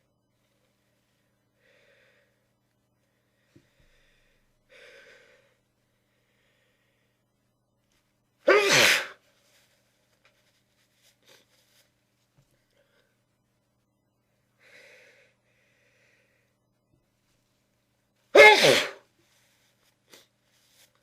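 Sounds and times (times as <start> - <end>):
person inhaling: 3.1 - 7.2, 14.6 - 16.6
person sneezing into a tissue: 8.4 - 9.7, 10.4 - 11.9, 18.3 - 20.9.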